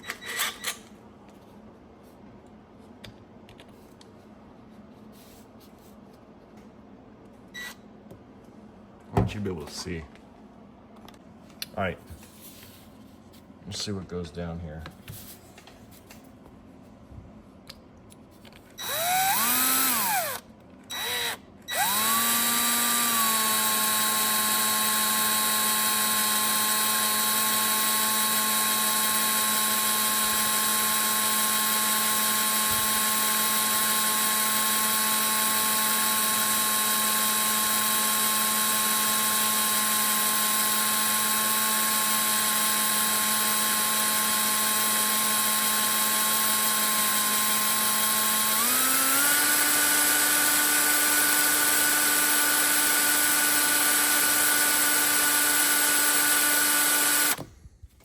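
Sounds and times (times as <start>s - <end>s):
electric drill spinning: 18.8s - 57.6s.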